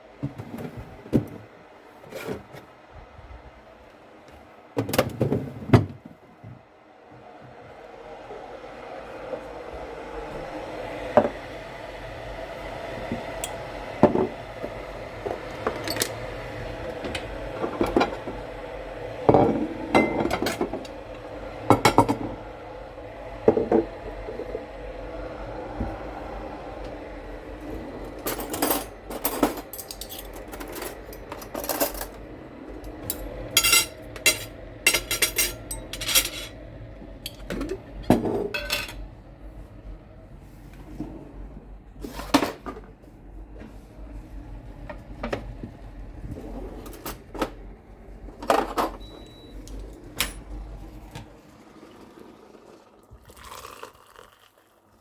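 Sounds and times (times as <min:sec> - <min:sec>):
steady hum: 0:06.8 - 0:51.6
dishes and utensils clinking: 0:19.4 - 0:20.8, 0:28.3 - 0:32.2, 0:33.0 - 0:36.6, 0:37.3 - 0:39.0.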